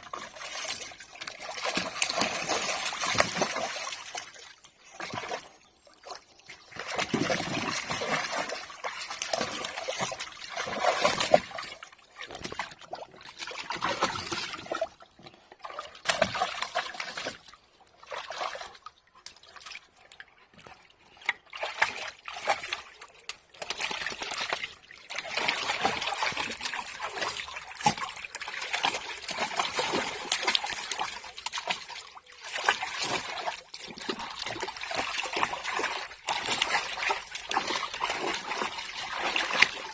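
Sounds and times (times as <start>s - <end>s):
dog splashing water: 0.1s - 14.9s, 15.6s - 19.8s, 21.5s - 23.0s, 23.6s - 39.9s.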